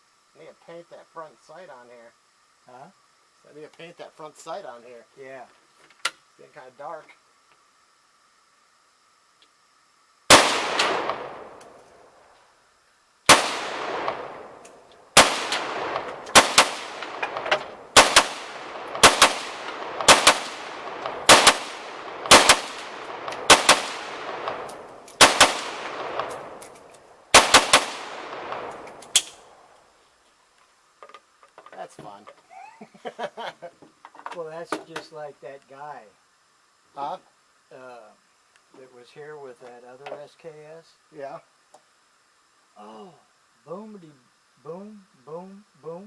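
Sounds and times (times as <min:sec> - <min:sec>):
gunshots with long echo: 0:10.3 - 0:11.8, 0:13.3 - 0:26.7, 0:27.3 - 0:29.7.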